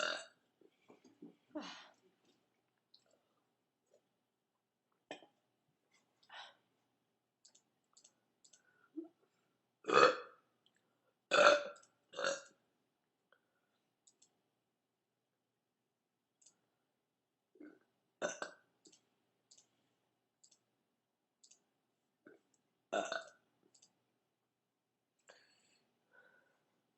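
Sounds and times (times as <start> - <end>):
woman belching: 0.0 - 0.3
faint clicks: 7.4 - 8.7, 18.8 - 19.7, 20.4 - 20.6.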